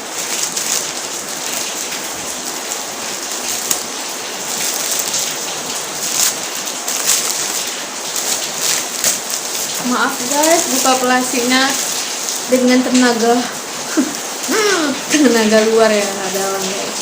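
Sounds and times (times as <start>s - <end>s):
plastic packaging crinkling: 0.0s - 14.3s.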